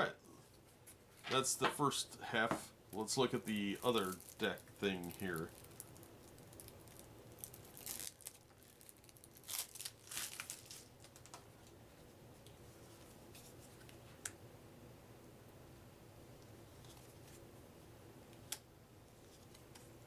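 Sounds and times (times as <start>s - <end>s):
playing cards packaging rustling: 3.0s - 11.4s.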